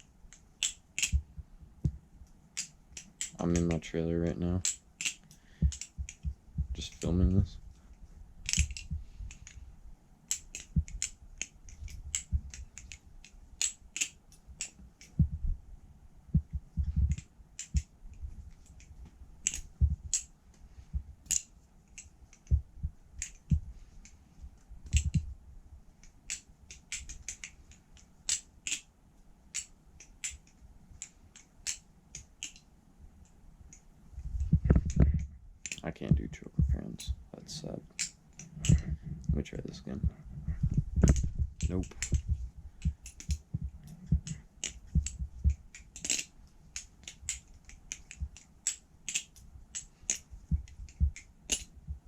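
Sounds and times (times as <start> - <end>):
dull low knocks: 5.7 - 7.6, 15.2 - 15.6, 34.2 - 35.5, 38.7 - 44.4
butterfly knife clicking: 44.6 - 50.3.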